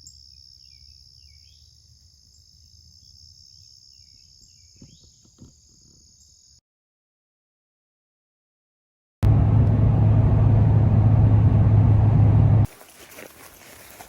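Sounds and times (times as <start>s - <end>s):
insect chorus: 0.0s - 6.6s, 12.7s - 14.0s.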